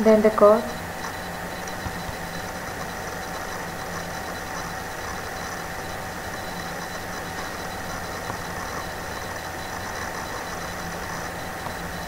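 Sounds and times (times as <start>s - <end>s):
background hum and hiss: 0.0s - 12.0s
constant tones: 0.0s - 12.0s.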